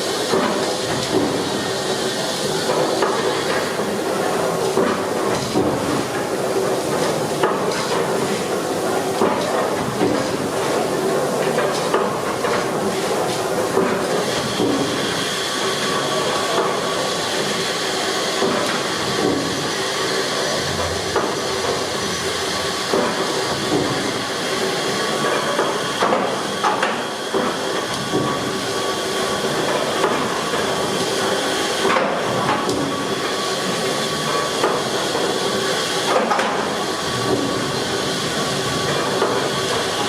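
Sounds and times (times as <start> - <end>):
steam engine hissing: 0.0 - 40.0.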